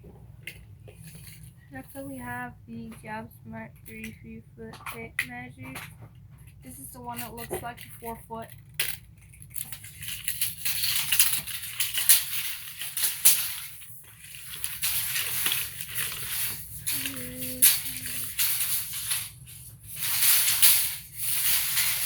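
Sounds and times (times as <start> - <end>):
tape measure clicking and rattling: 7.0 - 22.0.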